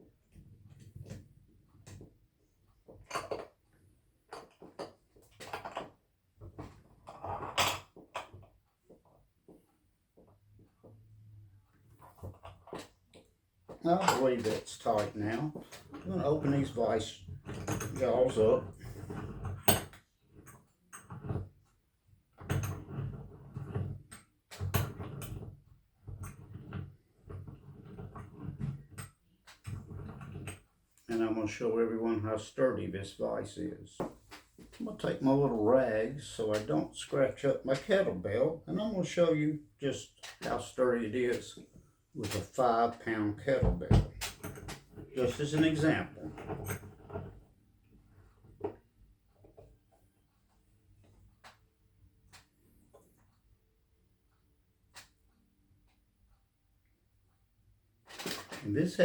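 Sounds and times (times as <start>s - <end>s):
vise screw turning in threads: 26.1s - 30.6s.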